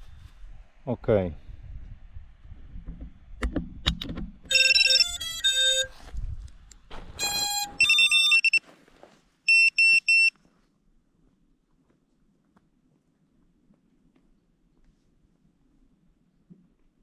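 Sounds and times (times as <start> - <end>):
short melodic electronic tones: 4.5 - 5.9, 7.2 - 8.6
short electronic beeps: 7.2 - 8.6, 9.5 - 10.3.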